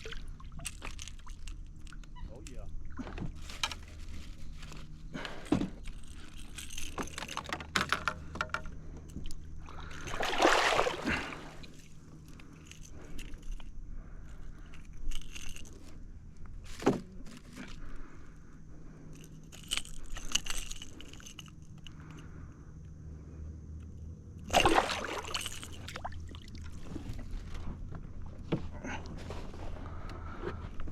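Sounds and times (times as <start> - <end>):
fishing gear rattling against hull: 0.0 - 22.9, 24.0 - 30.9.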